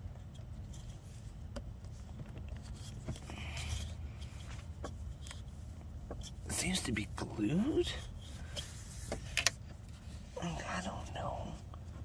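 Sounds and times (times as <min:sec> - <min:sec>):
low steady rumble: 0:00.0 - 0:12.0.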